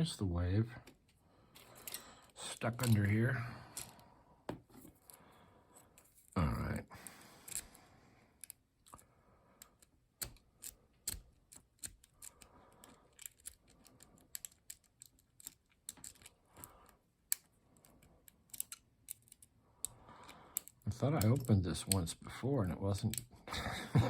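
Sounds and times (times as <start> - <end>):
lock pick clicking in lock: 9.6 - 16.7, 17.3 - 22.0.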